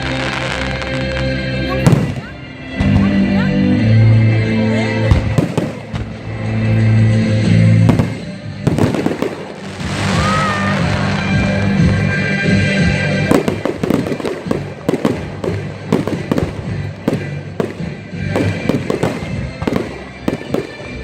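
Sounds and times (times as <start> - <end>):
fireworks crackling and popping: 0.0 - 3.1, 7.7 - 21.0
music: 0.0 - 21.0.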